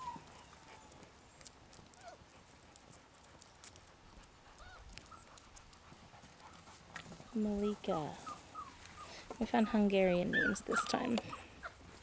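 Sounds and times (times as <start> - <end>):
puppies squeaking faintly: 4.6 - 5.4, 7.8 - 11.8.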